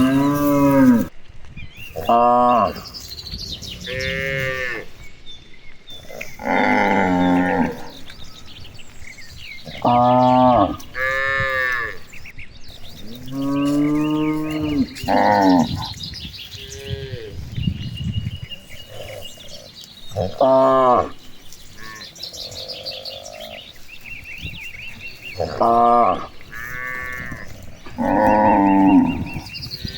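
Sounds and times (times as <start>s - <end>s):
cattle mooing: 0.0s - 1.1s, 6.1s - 8.1s, 9.7s - 12.1s, 13.1s - 16.0s, 18.8s - 21.2s, 25.2s - 29.9s
birds chirping: 0.0s - 29.9s.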